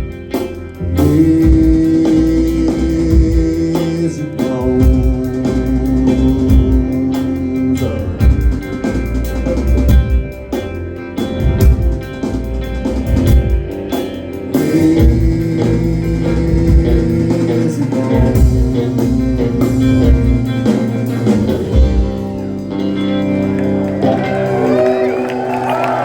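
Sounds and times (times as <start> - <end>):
rock band playing: 0.0 - 26.0
crowd whistling and cheering: 22.6 - 26.0.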